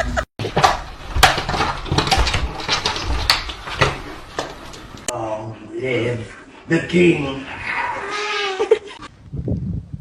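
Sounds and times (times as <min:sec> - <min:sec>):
hard objects clattering: 0:00.4 - 0:05.1.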